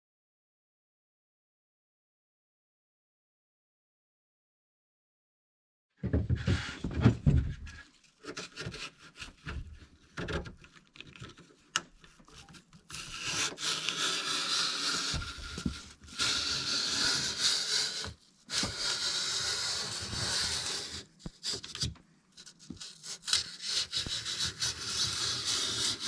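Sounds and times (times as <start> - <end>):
hand scraping and rubbing: 11.4 - 26.0.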